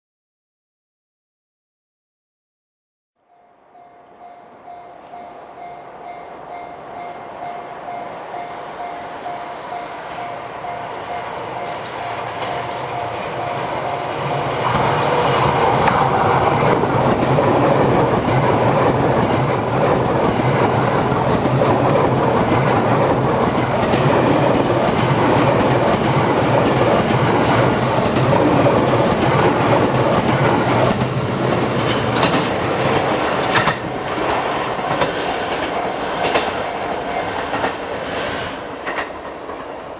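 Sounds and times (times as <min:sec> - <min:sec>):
train engines humming: 0:03.2 - 0:39.9
train wheels clacking over rail joints: 0:14.6 - 0:39.8.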